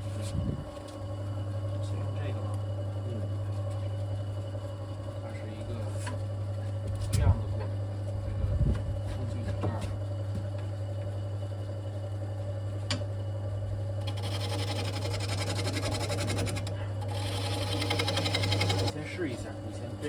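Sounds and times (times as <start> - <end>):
lathe motor hum: 0.0 - 20.0
turning tool scraping wood: 14.0 - 19.0.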